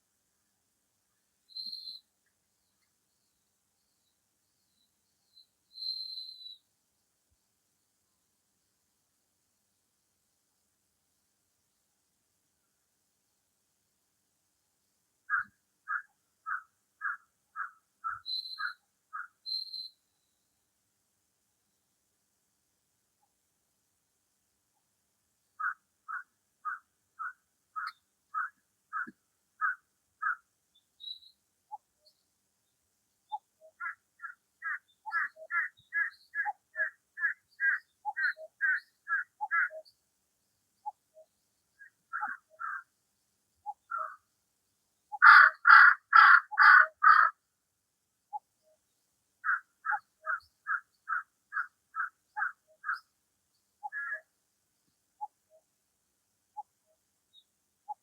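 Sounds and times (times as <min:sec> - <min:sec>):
faint bird chirps: 0:00.4 - 0:07.4, 0:15.2 - 0:20.7, 0:24.7 - 0:47.4, 0:48.2 - 0:55.7, 0:56.5 - 0:58.0
animal calling: 0:42.1 - 0:42.8, 0:53.8 - 0:54.2
crows cawing: 0:45.2 - 0:47.3.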